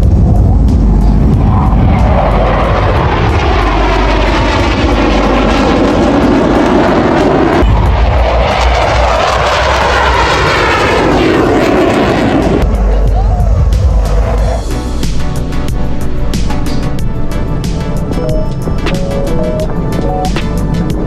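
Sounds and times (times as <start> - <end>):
aircraft flying past: 0.0 - 15.5.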